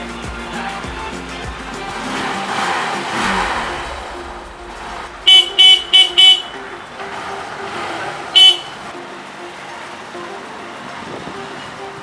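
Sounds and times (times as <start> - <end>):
short high-pitched beeps: 3.7 - 12.0.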